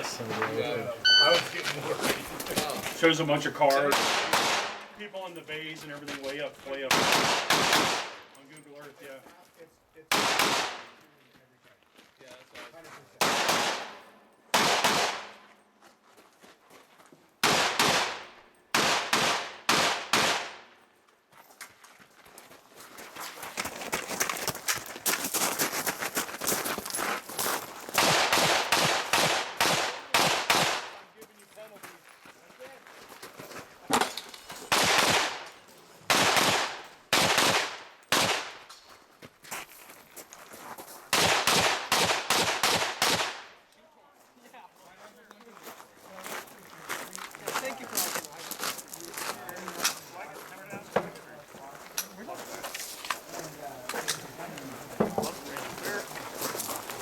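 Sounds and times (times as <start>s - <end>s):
rifle shots: 3.9s - 4.9s, 6.9s - 8.2s, 10.1s - 10.9s, 13.2s - 15.4s, 17.4s - 20.7s, 28.0s - 31.0s, 34.7s - 35.5s, 36.1s - 38.7s, 41.1s - 43.6s.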